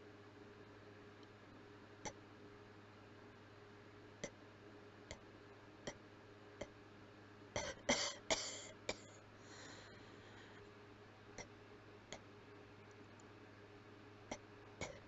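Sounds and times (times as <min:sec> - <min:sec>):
breathy hiss: 0:07.9 - 0:10.6.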